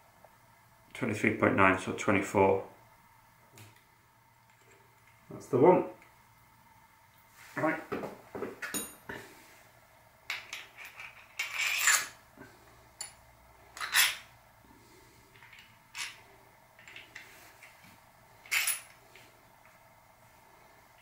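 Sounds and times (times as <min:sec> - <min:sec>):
metal bike parts clinking: 0:08.7 - 0:09.0, 0:13.8 - 0:14.3, 0:18.4 - 0:19.0.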